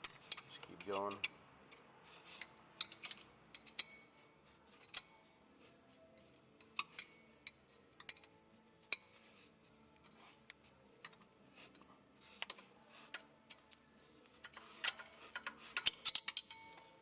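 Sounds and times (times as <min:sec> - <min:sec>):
wrench clinking on bolts: 0:00.0 - 0:01.8, 0:02.4 - 0:04.1, 0:14.4 - 0:17.0.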